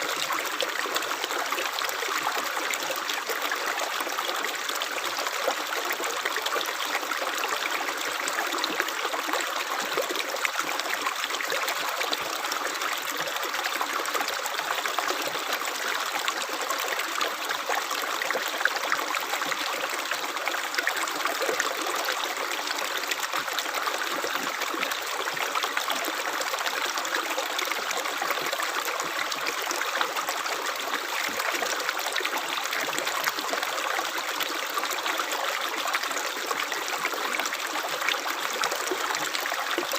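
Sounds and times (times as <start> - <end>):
water trickling and babbling: 0.0 - 39.9.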